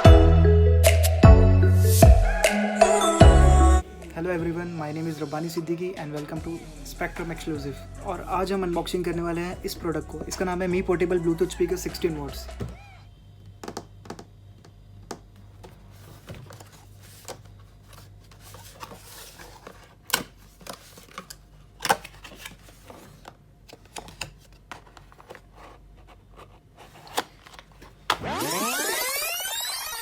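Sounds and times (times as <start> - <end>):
cardboard box handling: 15.6 - 28.0.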